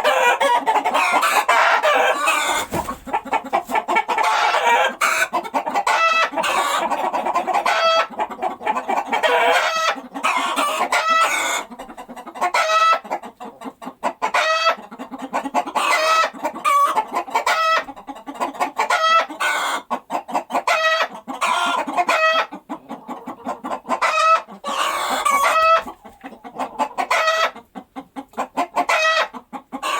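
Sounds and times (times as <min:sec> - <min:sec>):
hen clucking and cackling: 0:00.0 - 0:29.9.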